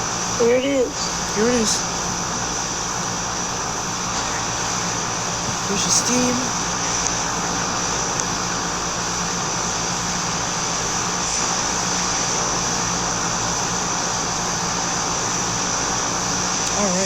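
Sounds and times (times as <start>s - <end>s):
heat pump units humming: 5.4s - 6.6s.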